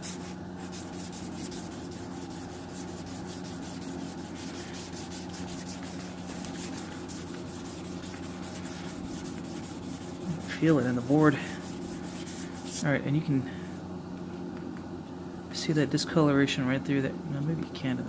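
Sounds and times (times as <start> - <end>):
wet sandpaper rubbing strokes: 0.0 - 12.9
low steady hum: 0.0 - 18.0.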